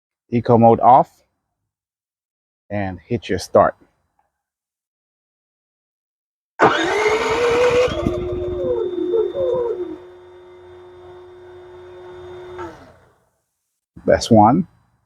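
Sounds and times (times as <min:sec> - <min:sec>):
generator engine running: 0:06.6 - 0:13.1
electric starter cranking: 0:06.6 - 0:13.2.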